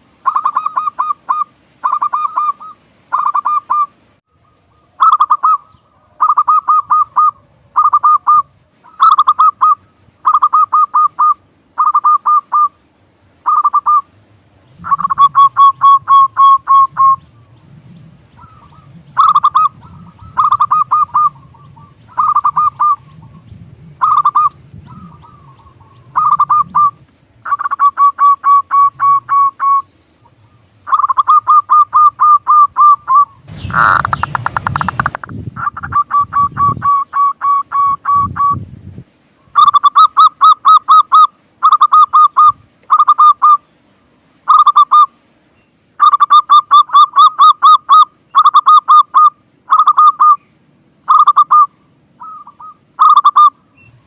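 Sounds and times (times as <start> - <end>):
doves cooing: 0.2 - 12.8, 13.4 - 38.6, 51.1 - 54.0.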